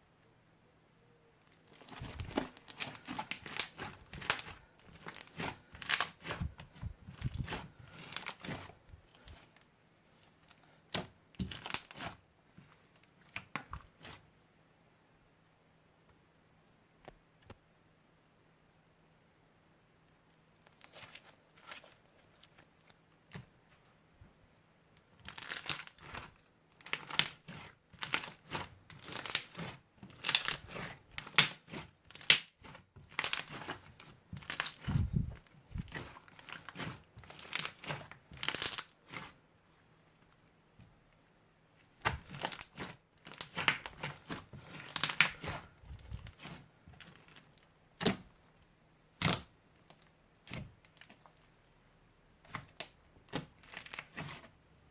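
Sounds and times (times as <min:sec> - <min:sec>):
crunchy slime crackling: 0:01.4 - 0:14.2, 0:20.5 - 0:23.5, 0:25.2 - 0:39.4, 0:41.8 - 0:51.5, 0:52.4 - 0:54.5.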